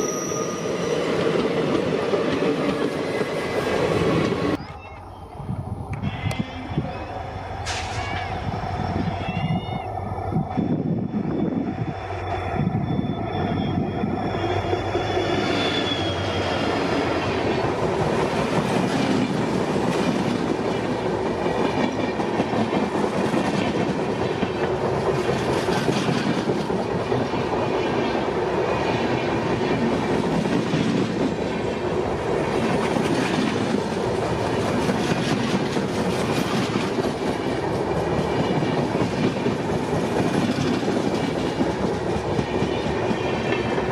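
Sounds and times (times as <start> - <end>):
thin high squeal: 0.0 - 1.0, 6.0 - 9.9
train wheels clattering on rails: 0.8 - 4.6, 17.2 - 28.2, 32.6 - 43.9.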